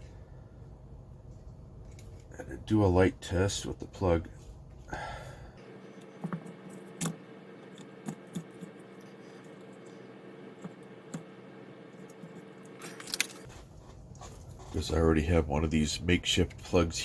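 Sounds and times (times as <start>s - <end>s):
faint steady hum: 0.0s - 17.0s.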